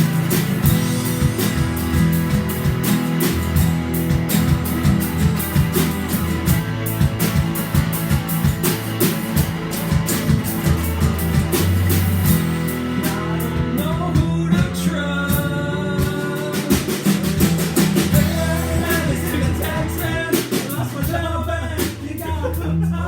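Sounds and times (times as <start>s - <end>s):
bass line: 0.0s - 23.0s
drum kit beat: 0.0s - 23.0s
strummed guitar: 0.0s - 23.0s
person singing: 13.0s - 23.0s.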